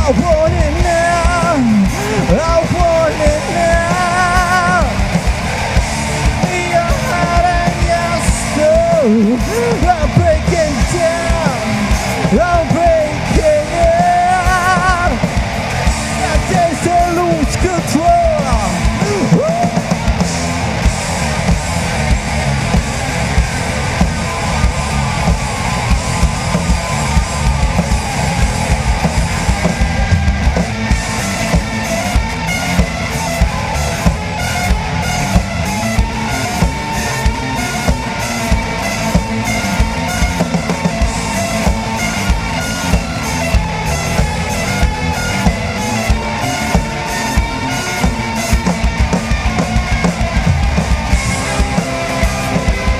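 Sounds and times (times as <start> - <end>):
drums striking hard: 0.0 - 52.9
rock band instrumental: 0.0 - 52.9.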